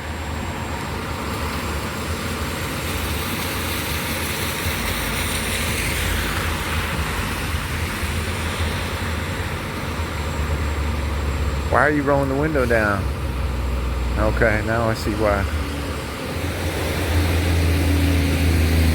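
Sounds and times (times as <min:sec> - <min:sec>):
low engine rumble: 0:06.0 - 0:18.9.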